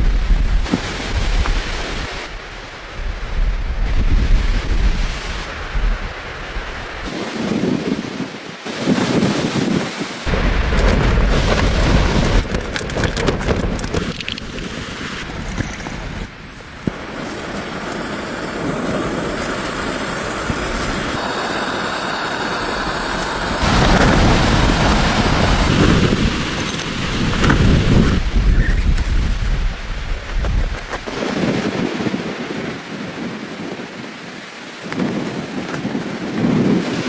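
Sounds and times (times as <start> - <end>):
wind buffeting microphone: 0.0 - 37.0
sharp knocks and rattles: 10.7 - 14.4.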